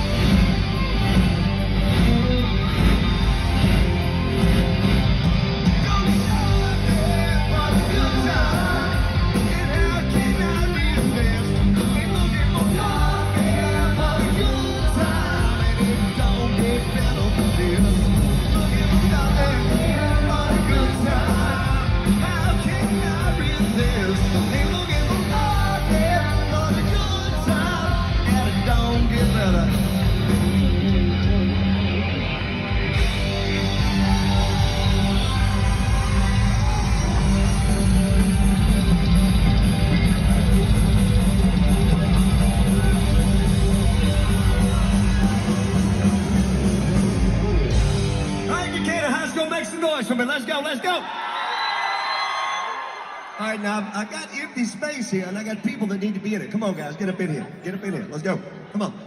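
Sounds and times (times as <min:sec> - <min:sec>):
live rock band playing: 0:00.0 - 0:49.7
person singing: 0:05.8 - 0:29.9.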